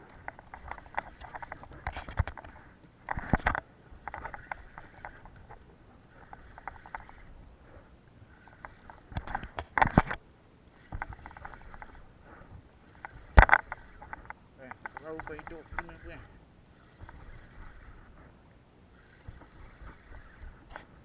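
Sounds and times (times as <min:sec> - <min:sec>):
small clicks and taps: 0:00.0 - 0:07.3, 0:08.4 - 0:10.2, 0:10.8 - 0:18.3.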